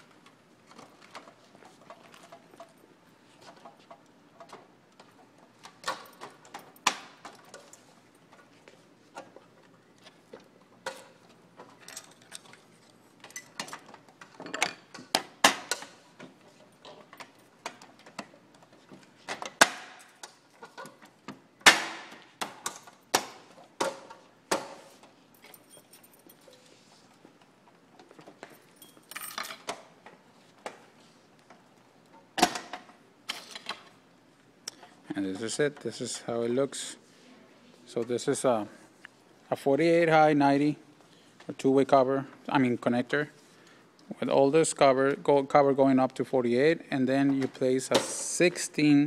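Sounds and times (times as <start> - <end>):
metal hardware clicks and clinks: 10.8 - 15.9, 25.3 - 26.7, 28.4 - 29.8.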